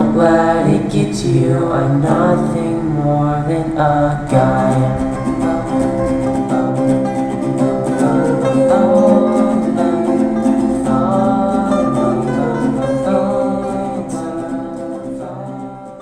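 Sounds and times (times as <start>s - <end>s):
pop song with acoustic guitar: 0.0s - 16.0s.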